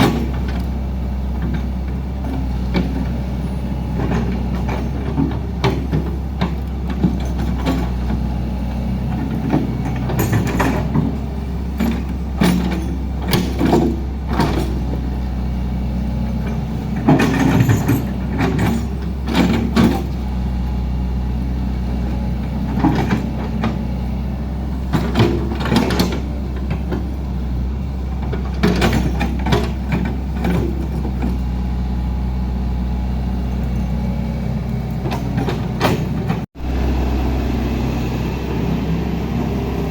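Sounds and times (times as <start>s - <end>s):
heavy diesel engine running: 0.0s - 39.9s
metallic clanks and knocks: 3.9s - 8.3s, 9.1s - 15.1s, 16.3s - 20.3s, 22.0s - 24.0s, 24.7s - 31.5s, 34.7s - 36.5s.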